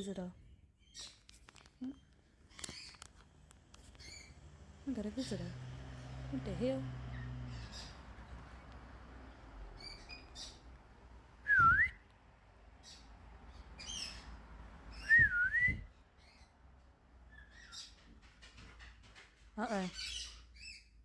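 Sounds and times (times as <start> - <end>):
high bird chirps: 9.8 - 10.8
loud swooping whistles: 11.5 - 12.0, 15.0 - 15.9.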